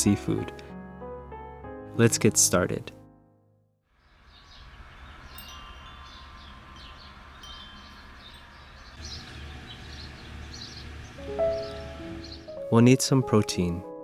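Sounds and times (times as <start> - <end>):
wind chimes ringing: 4.3 - 10.8.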